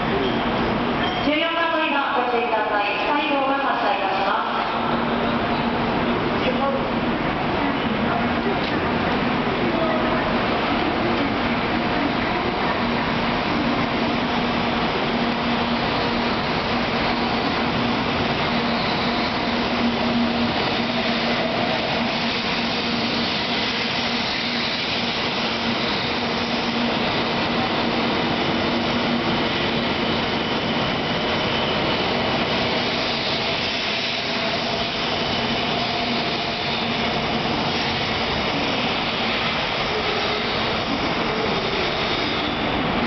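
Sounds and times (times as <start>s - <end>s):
train running past: 0.0s - 43.0s.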